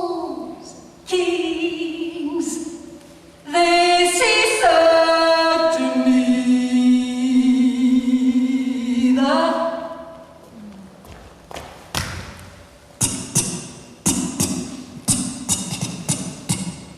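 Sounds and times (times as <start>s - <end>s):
woman singing a cappella: 0.0s - 2.8s, 3.5s - 10.2s.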